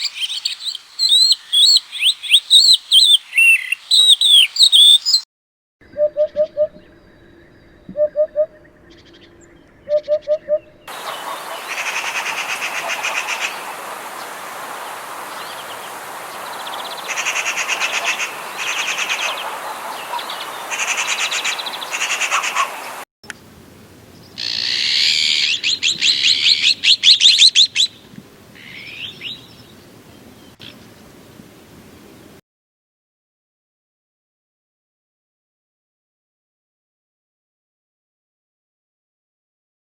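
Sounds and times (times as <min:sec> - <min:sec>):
background hiss: 0:00.0 - 0:05.2, 0:10.9 - 0:25.4
bird singing high trilled phrases: 0:00.0 - 0:05.2, 0:05.8 - 0:10.9
low hooting bird: 0:05.8 - 0:23.0
bird fast loud trills: 0:09.8 - 0:23.0.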